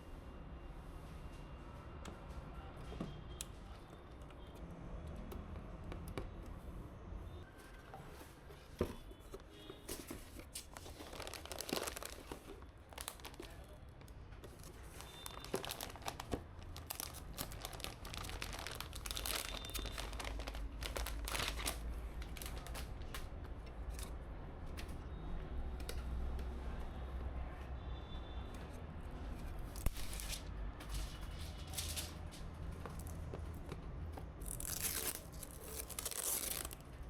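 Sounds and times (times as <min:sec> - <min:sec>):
packaging crinkling: 0:10.4 - 0:23.1, 0:29.7 - 0:32.3, 0:34.4 - 0:37.0.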